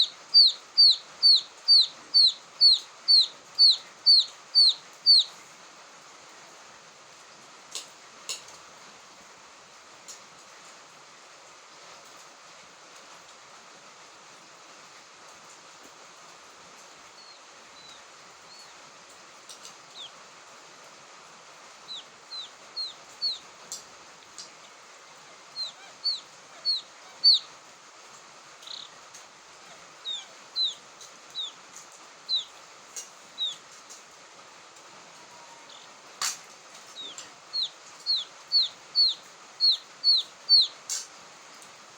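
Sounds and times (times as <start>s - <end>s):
quail chicks peeping: 0.0s - 5.4s, 19.5s - 20.2s, 21.8s - 24.5s, 25.2s - 27.6s, 28.6s - 33.9s, 35.4s - 41.1s
steady hiss: 0.0s - 41.9s.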